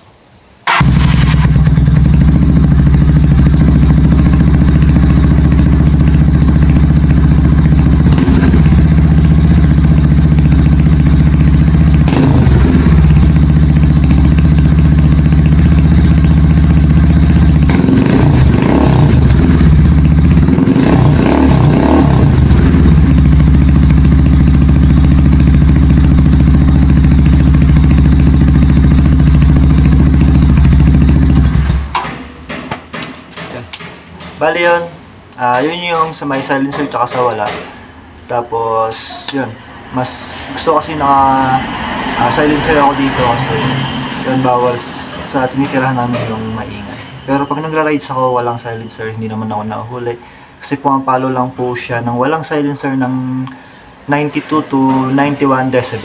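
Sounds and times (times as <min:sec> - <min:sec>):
motorcycle throttle blips: 0:00.6 - 0:34.4
motorcycle engine idling loudly: 0:00.7 - 0:34.3, 0:39.8 - 0:47.5.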